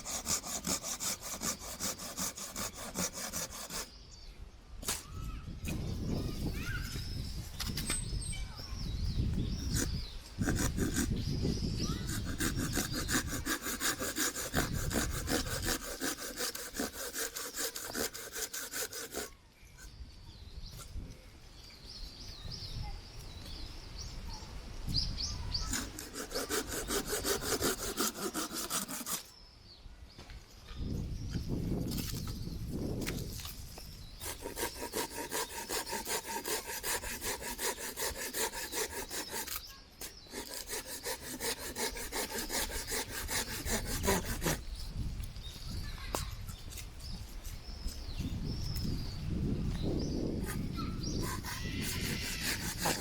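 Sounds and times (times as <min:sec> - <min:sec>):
hand saw cutting wood: 0:00.0 - 0:04.0, 0:09.4 - 0:19.4, 0:25.5 - 0:29.3, 0:34.1 - 0:44.7, 0:50.4 - 0:53.0
wind rumbling on microphone: 0:04.3 - 0:13.5, 0:30.0 - 0:34.4, 0:43.2 - 0:53.0.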